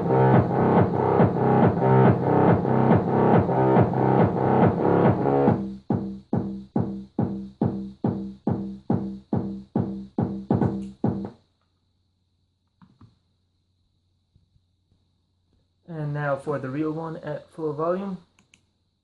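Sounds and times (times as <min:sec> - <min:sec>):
bass pulses: 0:00.0 - 0:11.3
distorted electronic bass music: 0:00.0 - 0:11.3.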